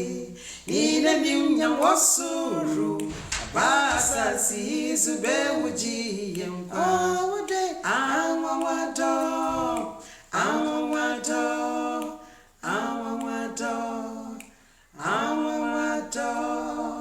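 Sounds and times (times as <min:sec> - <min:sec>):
women singing in harmony: 0:00.0 - 0:17.0.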